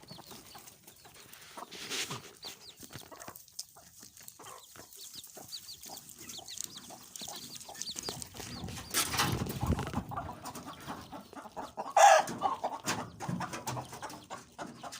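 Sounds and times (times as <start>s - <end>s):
chickens clucking: 0.0s - 14.9s
rustling: 0.6s - 11.6s.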